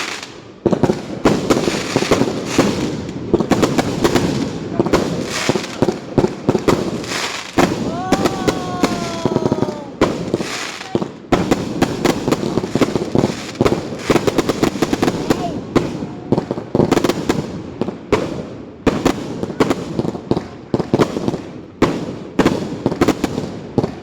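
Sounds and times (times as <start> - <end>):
fireworks cracking and banging: 0.0 - 24.0
falling firework whistle: 7.2 - 11.0.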